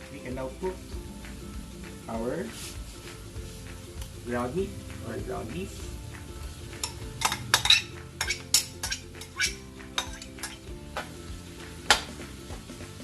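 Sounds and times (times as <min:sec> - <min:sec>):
meat sizzling: 0:00.0 - 0:13.0
utensil scraping a pan: 0:06.8 - 0:10.7.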